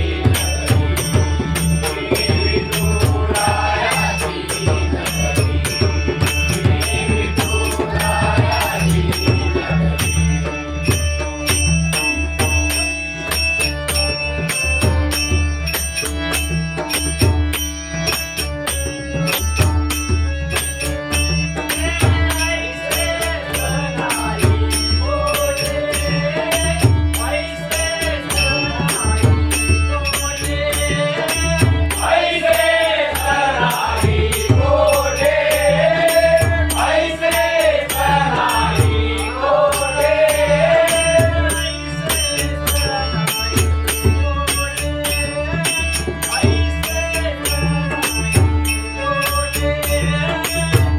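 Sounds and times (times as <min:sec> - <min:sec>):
man singing: 0:00.0 - 0:10.4, 0:21.8 - 0:48.4, 0:49.0 - 0:50.9
hand drum rhythm: 0:00.0 - 0:12.8, 0:27.8 - 0:44.8, 0:45.5 - 0:48.6.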